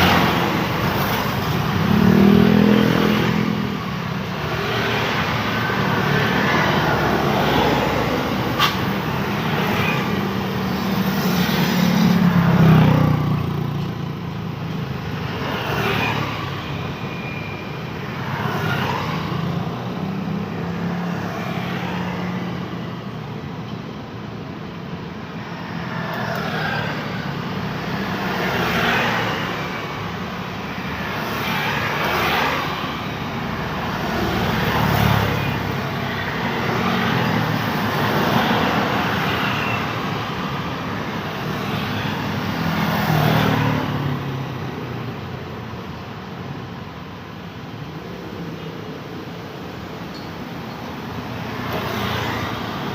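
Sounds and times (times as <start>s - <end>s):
motorbikes passing: 0.0s - 17.0s, 25.4s - 49.4s
cars passing: 0.0s - 52.9s.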